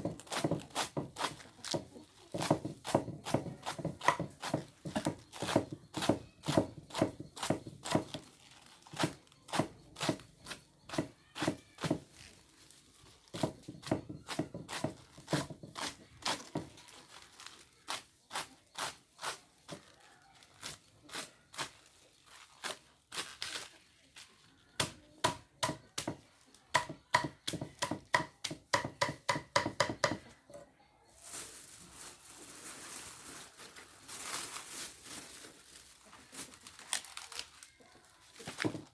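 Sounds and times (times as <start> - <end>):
blade chopping on wood: 0.0 - 8.1, 26.8 - 30.3
rustling and crinkling: 0.0 - 24.7, 30.4 - 38.9.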